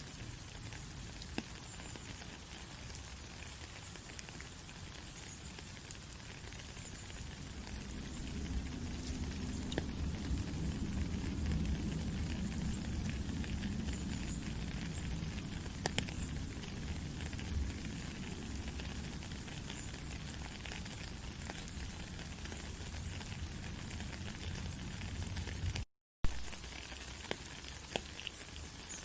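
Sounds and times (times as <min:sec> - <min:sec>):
rain falling in forest: 0:00.0 - 0:29.0
low rumble: 0:07.3 - 0:19.1
water drip clicks: 0:09.0 - 0:09.9, 0:15.7 - 0:16.4.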